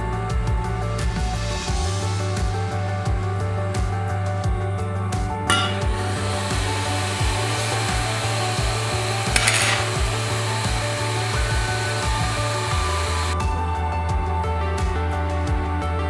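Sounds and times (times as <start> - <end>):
background music with low pulse: 0.0 - 16.0.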